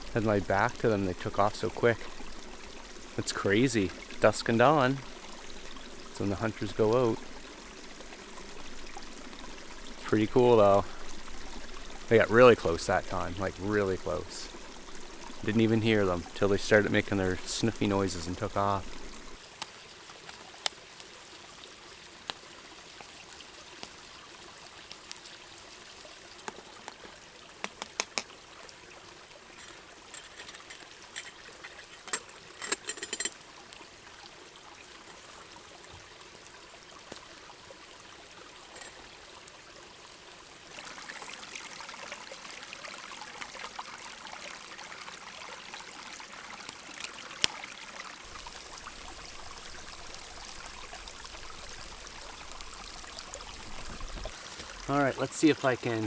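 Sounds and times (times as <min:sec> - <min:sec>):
brook babbling: 0:00.0 - 0:56.0
sharp clicks and ticks: 0:27.6 - 0:28.3.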